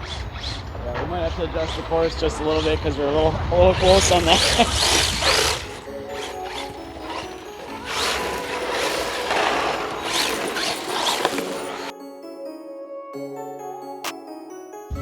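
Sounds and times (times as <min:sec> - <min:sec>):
toy car motors whining: 0:00.0 - 0:11.9.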